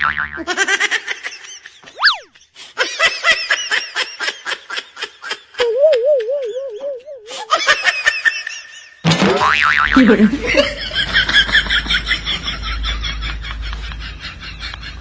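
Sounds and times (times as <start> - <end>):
canned laughter: 0.6 - 9.0
wobbling wavering tone: 1.9 - 2.3, 5.6 - 7.4
whistle-like pitch glide: 1.9 - 2.4, 5.6 - 7.3.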